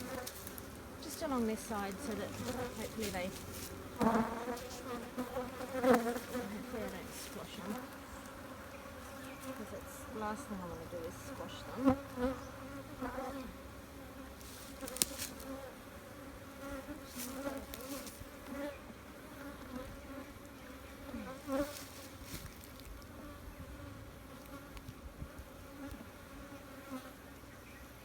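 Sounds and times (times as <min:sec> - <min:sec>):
bees buzzing: 0:00.0 - 0:27.2.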